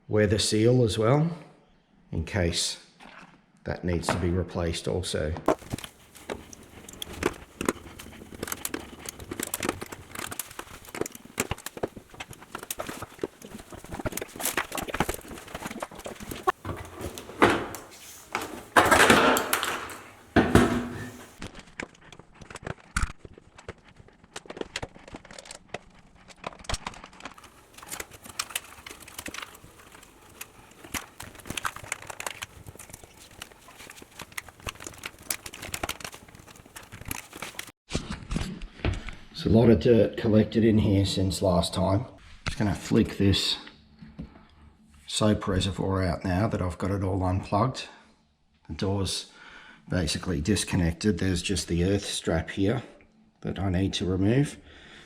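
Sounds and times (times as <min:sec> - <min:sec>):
scraping rub: 0:05.6 - 0:21.4.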